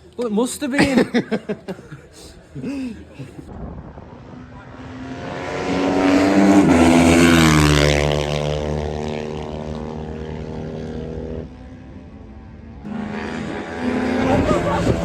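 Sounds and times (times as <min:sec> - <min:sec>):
motorcycle engine passing by: 0:04.0 - 0:15.0.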